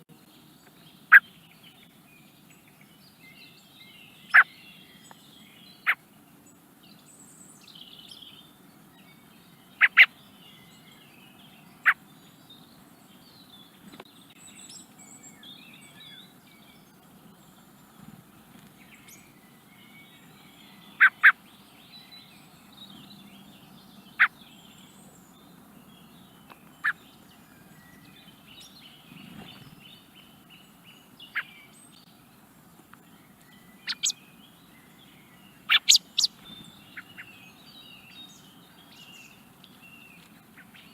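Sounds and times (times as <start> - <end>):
faint bird twittering: 0.0 - 40.9
blackbird call notes: 3.9 - 6.0, 9.1 - 12.1, 18.8 - 23.4, 24.0 - 32.0, 33.0 - 40.9.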